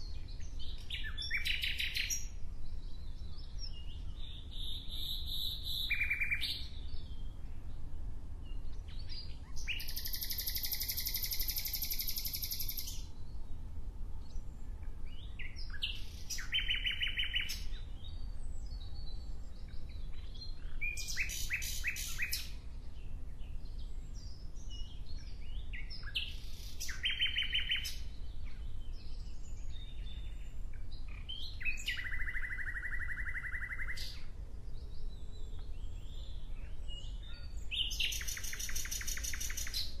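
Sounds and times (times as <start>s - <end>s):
songbird trilling: 0.6s - 2.3s, 4.2s - 6.7s, 9.4s - 13.1s, 15.4s - 17.8s, 20.6s - 22.5s, 25.8s - 28.1s, 31.1s - 34.2s, 37.0s - 40.0s.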